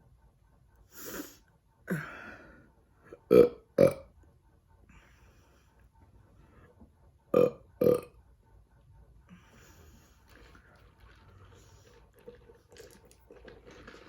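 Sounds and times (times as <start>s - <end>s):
faint small noises: 0.0s - 14.0s
loud burps: 3.2s - 4.1s, 7.3s - 8.1s.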